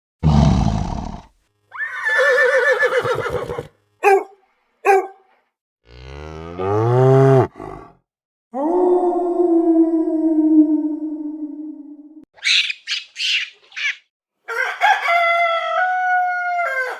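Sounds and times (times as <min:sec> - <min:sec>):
horse whinny: 0:00.2 - 0:03.7
cow mooing: 0:05.8 - 0:07.8.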